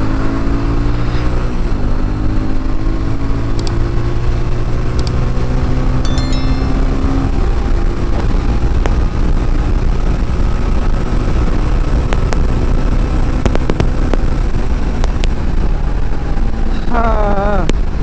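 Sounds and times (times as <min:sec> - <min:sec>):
sharp clicks: 0:05.0 - 0:05.2.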